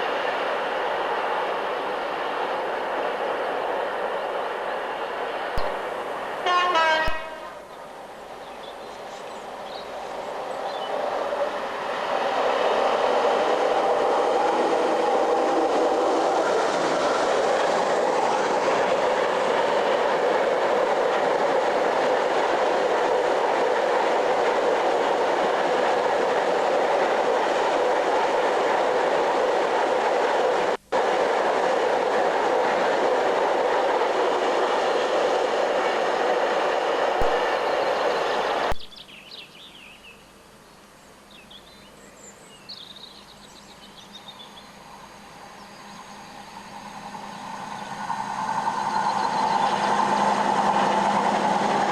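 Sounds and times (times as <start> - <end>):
diesel locomotive engine: 0.0 - 51.9
train horn: 6.4 - 7.7.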